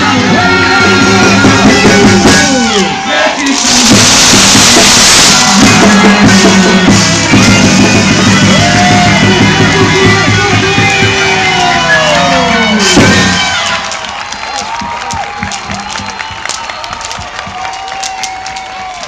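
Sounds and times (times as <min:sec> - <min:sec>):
loud dance music: 0:00.0 - 0:13.8.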